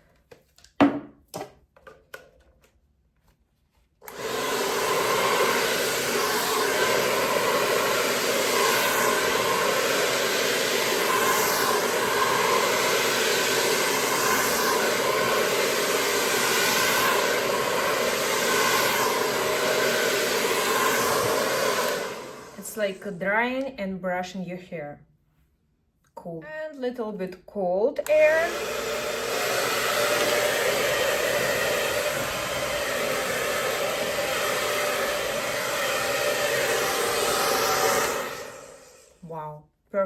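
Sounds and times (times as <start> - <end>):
hair dryer blowing whir: 4.0 - 23.7, 28.0 - 39.3.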